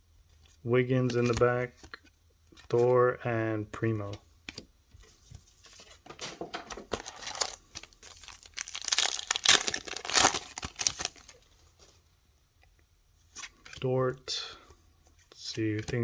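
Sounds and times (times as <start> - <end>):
plastic foil wrapper tearing: 7.0 - 11.4.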